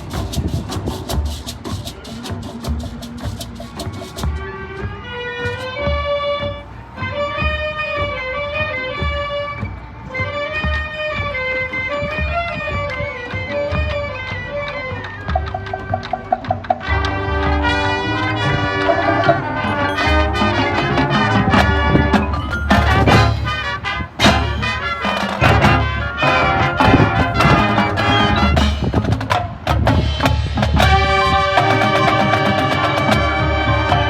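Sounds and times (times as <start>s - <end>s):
busy instrumental music: 0.0s - 34.0s
sharp percussive hits: 15.6s - 34.0s.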